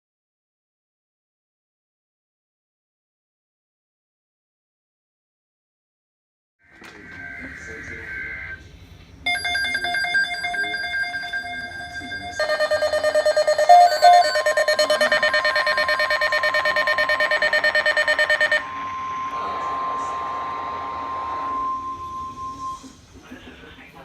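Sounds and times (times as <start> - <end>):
emergency alert alarm beeping: 9.3 - 22.8
single steady tone: 9.6 - 22.9.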